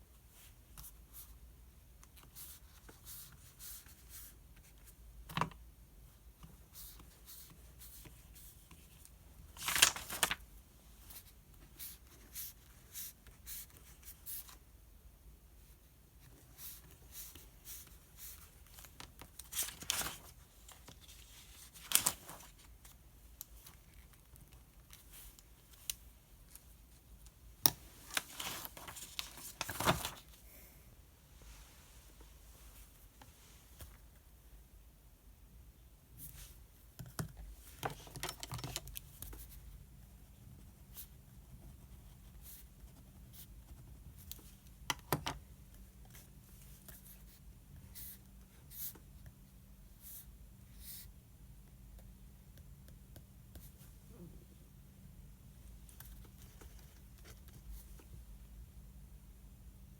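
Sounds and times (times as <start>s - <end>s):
paper pages rustling: 9.6s - 10.4s, 18.2s - 23.0s, 27.8s - 30.4s.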